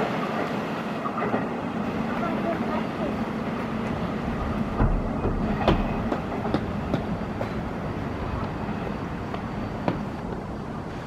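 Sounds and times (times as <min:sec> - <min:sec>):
train rumble: 0:00.0 - 0:11.0
train wheels clacking on rails: 0:03.5 - 0:10.5.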